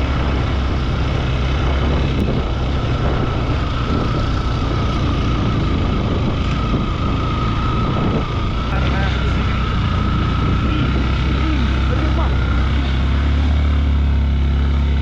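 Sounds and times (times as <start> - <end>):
motorcycle engine running: 0.0 - 15.0
steady high whine: 0.0 - 15.0
wind rumble on microphone: 0.0 - 15.0.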